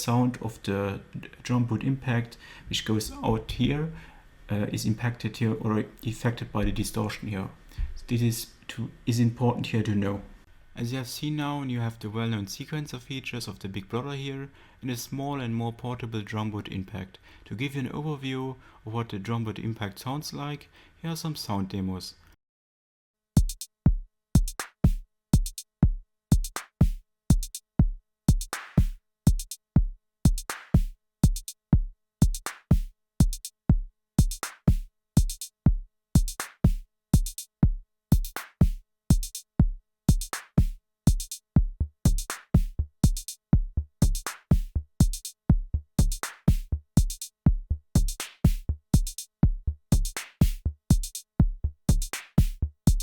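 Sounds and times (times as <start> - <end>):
deep kick drum: 6.6 - 6.9, 23.4 - 53.0
hi-hat ticks: 23.4 - 23.7, 24.4 - 25.7, 26.3 - 27.6, 28.3 - 29.6, 30.3 - 31.6, 32.2 - 33.6, 34.2 - 35.5, 36.2 - 37.5, 38.1 - 39.5, 40.1 - 43.4, 44.0 - 47.4, 48.0 - 53.0
snare-like hit: 28.5 - 29.0, 30.4 - 30.9, 32.3 - 32.9, 40.2 - 41.3, 42.1 - 42.7, 44.1 - 44.7, 46.0 - 47.2, 48.0 - 49.1, 50.0 - 51.2, 51.9 - 53.0.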